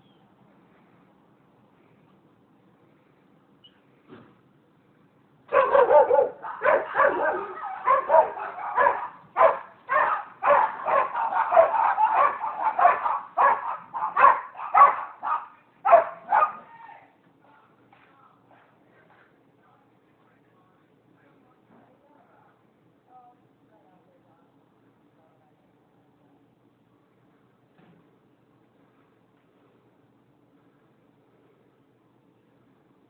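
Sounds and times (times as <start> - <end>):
dogs barking: 5.5 - 16.7.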